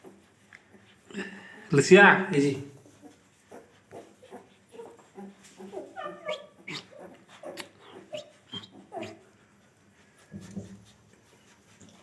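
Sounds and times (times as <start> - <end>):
dog whimpering and whining: 3.5 - 9.2.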